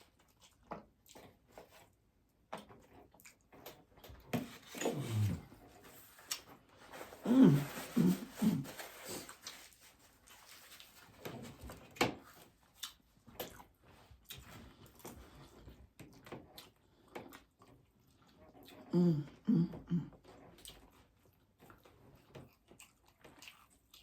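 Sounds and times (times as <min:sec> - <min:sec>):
crunchy taco shells being chewed: 0:00.0 - 0:02.0, 0:09.1 - 0:19.4, 0:20.2 - 0:24.0.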